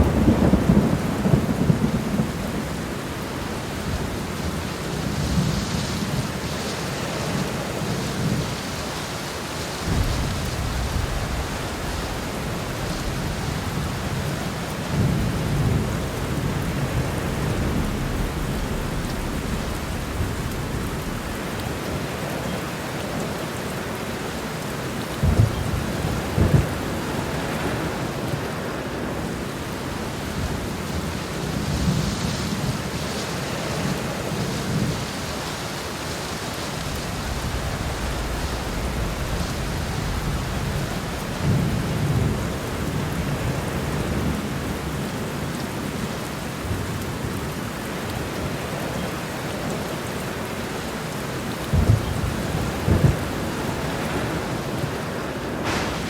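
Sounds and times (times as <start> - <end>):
loud thunderclaps: 0.0 - 6.3, 9.8 - 23.3, 25.1 - 28.6, 36.8 - 44.9, 51.6 - 56.0
thunder rolling: 0.0 - 6.3, 9.8 - 23.3, 25.2 - 33.0, 36.8 - 44.4, 51.6 - 56.0
heavy rain falling: 0.0 - 56.0.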